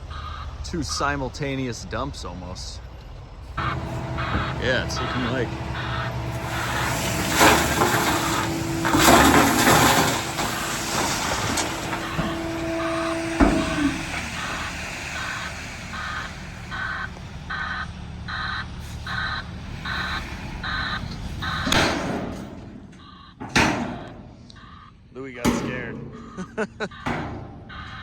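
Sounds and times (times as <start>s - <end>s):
truck reversing alarm beeping: 0.0s - 2.3s, 2.9s - 28.0s
dump trucks running: 0.0s - 28.0s
rushing hiss: 3.6s - 17.5s
sharp bang: 21.5s - 22.8s, 25.4s - 26.3s.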